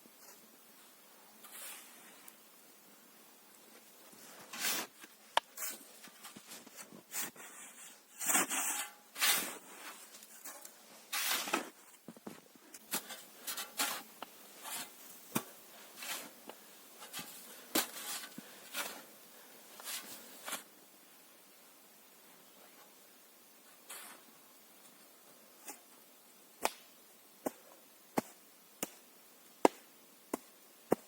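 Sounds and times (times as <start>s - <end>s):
rustling and scraping: 1.4s - 2.3s, 3.7s - 19.1s, 19.8s - 20.7s, 23.8s - 24.3s.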